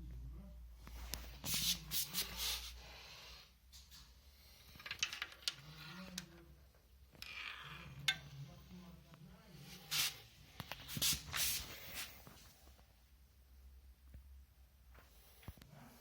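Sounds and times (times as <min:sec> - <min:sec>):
objects being handled: 0:03.7 - 0:06.5.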